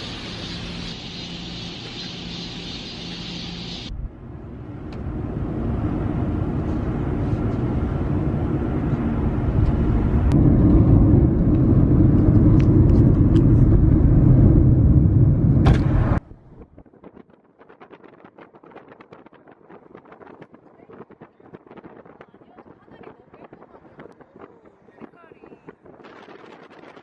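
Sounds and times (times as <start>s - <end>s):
low rumble: 3.3s - 18.2s.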